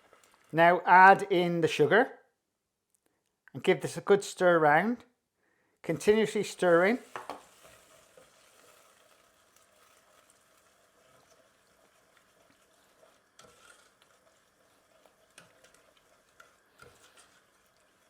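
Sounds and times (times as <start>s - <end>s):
stirring in a saucepan: 6.0s - 18.0s
spoon knocking against pan: 7.1s - 7.4s.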